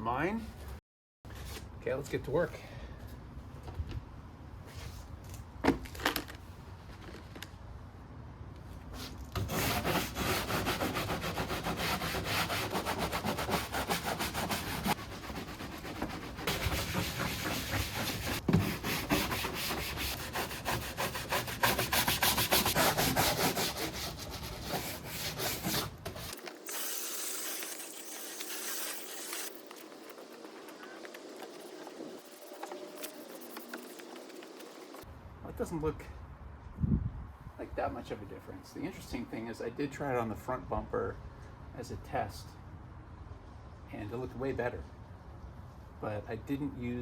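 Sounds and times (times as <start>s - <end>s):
brush scrubbing plastic: 9.0s - 35.0s.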